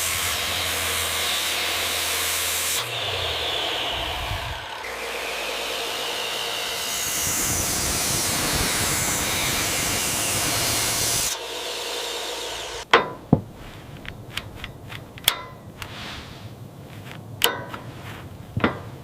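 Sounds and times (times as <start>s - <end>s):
loud rushing hiss: 0.0s - 12.9s
hand tools knocking on wood: 12.9s - 13.5s.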